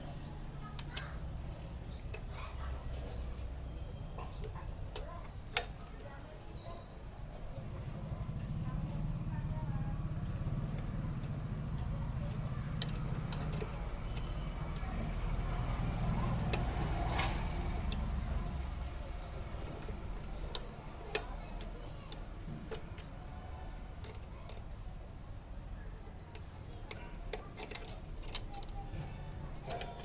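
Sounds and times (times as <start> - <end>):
scooter engine running: 7.2 - 24.9.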